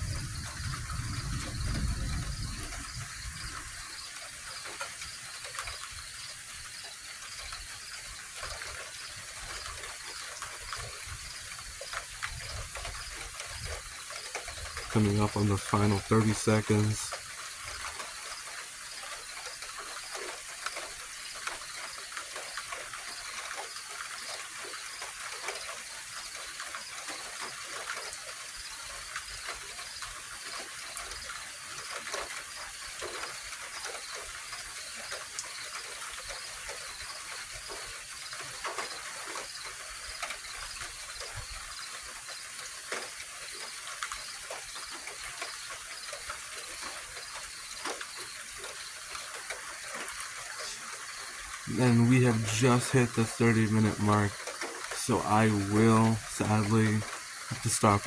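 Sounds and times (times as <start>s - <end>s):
hiss of light rain: 0.0s - 58.0s
insects chirring: 0.0s - 58.0s
faint ticks: 17.1s - 52.4s.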